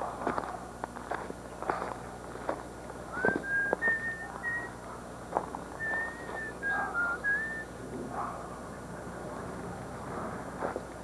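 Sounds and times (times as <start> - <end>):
person whistling high notes: 3.2 - 4.7, 5.8 - 7.7.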